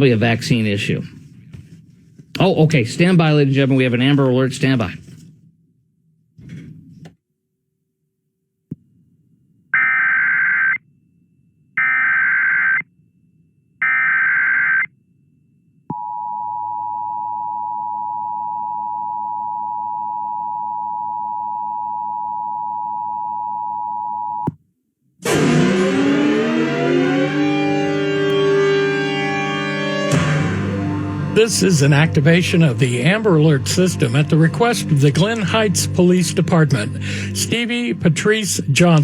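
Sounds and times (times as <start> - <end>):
loud music: 25.2 - 39.0.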